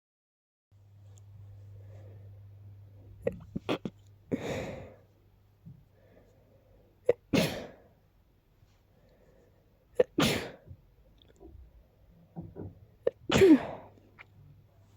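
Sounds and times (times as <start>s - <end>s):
person sneezing: 7.1s - 7.9s, 10.0s - 10.7s, 13.1s - 13.9s.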